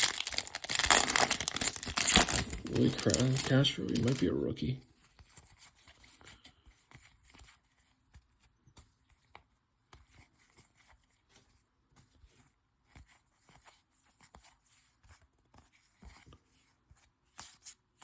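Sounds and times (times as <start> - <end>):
trading cards being flipped: 0.0 - 4.4.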